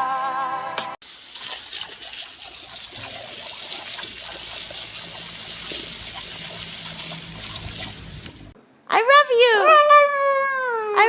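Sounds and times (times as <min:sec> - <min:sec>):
water running: 0:01.0 - 0:08.6.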